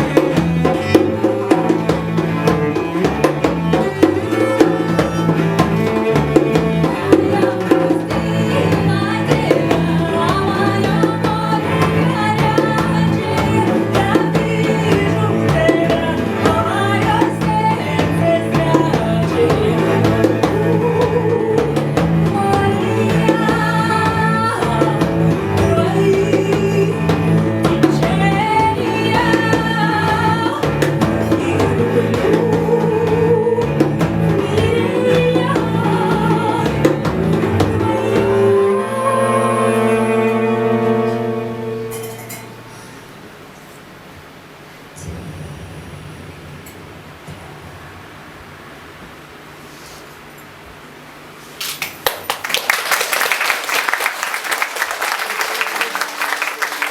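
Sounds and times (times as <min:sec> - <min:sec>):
hand drum strokes: 0:00.0 - 0:39.0, 0:39.8 - 0:43.9
cellos playing low figure: 0:00.0 - 0:43.2
woman singing with vibrato: 0:03.6 - 0:42.8.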